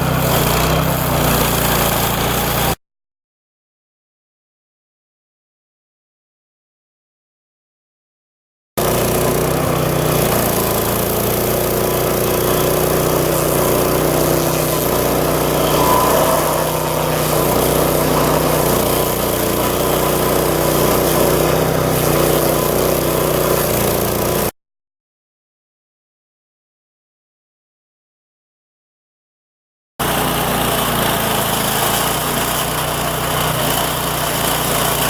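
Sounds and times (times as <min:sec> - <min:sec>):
stump grinder engine running: 0:08.8 - 0:24.5, 0:30.2 - 0:35.0.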